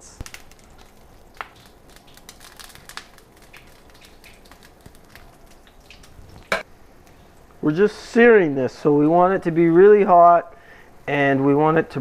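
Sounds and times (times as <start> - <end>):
fish sizzling in a pan: 0.0 - 7.4.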